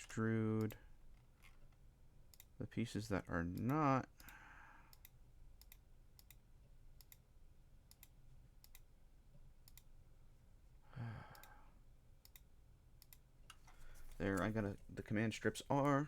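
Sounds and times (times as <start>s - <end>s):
computer mouse clicking: 2.3s - 2.5s, 3.5s - 6.4s, 7.0s - 7.2s, 7.9s - 8.9s, 9.6s - 9.9s, 11.3s - 11.6s, 12.2s - 14.6s.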